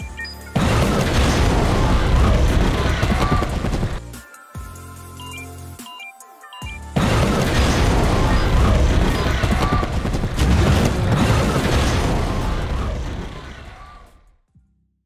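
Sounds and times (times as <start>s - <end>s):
rapid crackling: 7.0s - 13.5s.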